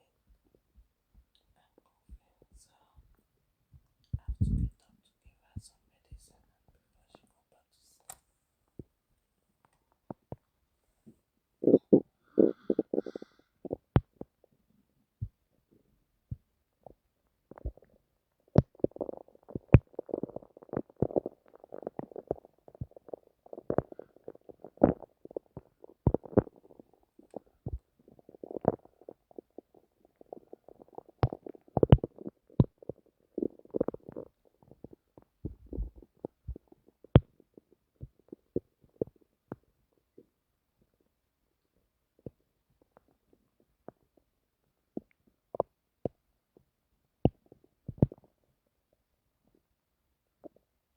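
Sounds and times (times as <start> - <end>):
stomach gurgling and rumbling: 4.1 - 4.8, 10.0 - 10.5, 11.6 - 48.6, 50.4 - 50.8.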